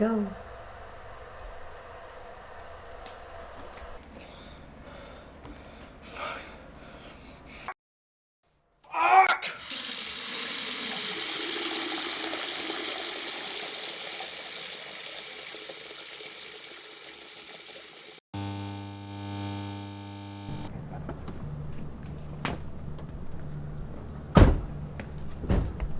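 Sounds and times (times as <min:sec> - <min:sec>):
running water: 0:09.6 - 0:18.2.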